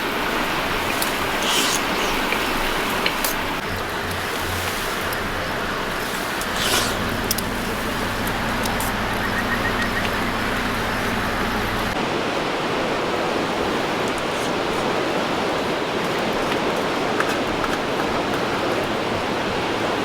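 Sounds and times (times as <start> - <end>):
low hum: 3.6 - 12.0.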